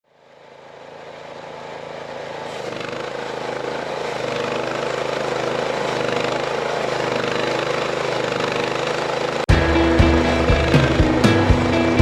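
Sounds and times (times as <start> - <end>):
engine running steadily: 0.0 - 12.0.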